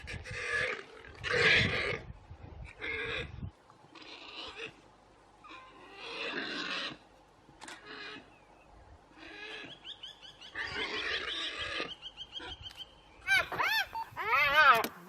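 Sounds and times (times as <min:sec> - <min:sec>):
animal harsh rasping calls: 0:04.0 - 0:04.8, 0:05.4 - 0:07.0.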